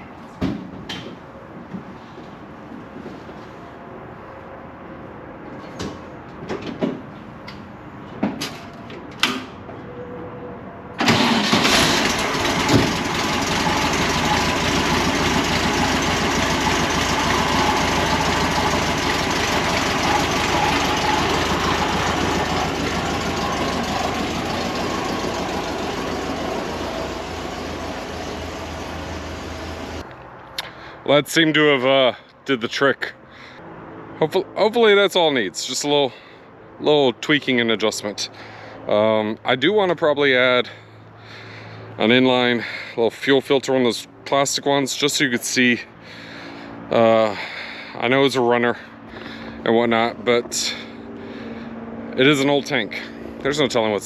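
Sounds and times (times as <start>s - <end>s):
car engine starting and running: 10.9s - 30.1s.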